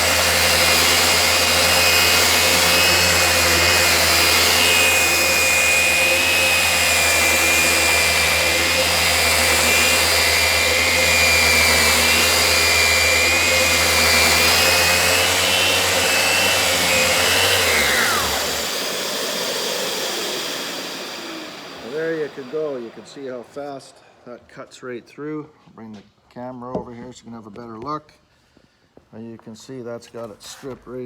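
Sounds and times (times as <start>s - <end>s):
dust extraction rushing: 0.0s - 24.2s
sander motor whine: 0.0s - 24.3s.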